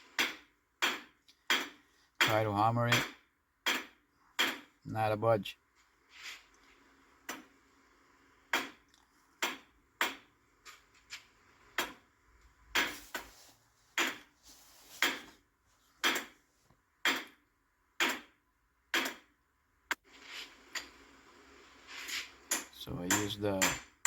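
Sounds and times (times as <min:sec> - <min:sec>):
hammer striking metal punch: 0:00.2 - 0:04.7, 0:22.5 - 0:24.0.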